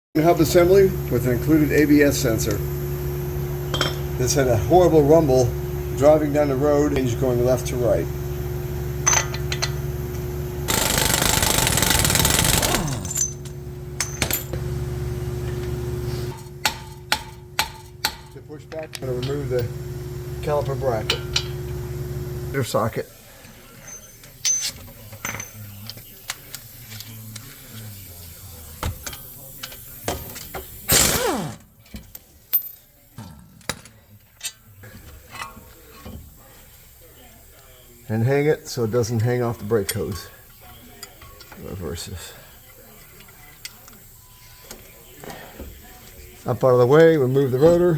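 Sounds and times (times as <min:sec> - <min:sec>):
steady low hum: 0:00.2 - 0:23.0
impact wrench hammering: 0:03.7 - 0:04.5, 0:09.0 - 0:09.8, 0:10.7 - 0:14.6, 0:16.3 - 0:19.7, 0:21.0 - 0:21.6, 0:30.1 - 0:31.8
hand tool burst dropping in pitch: 0:10.7 - 0:14.6.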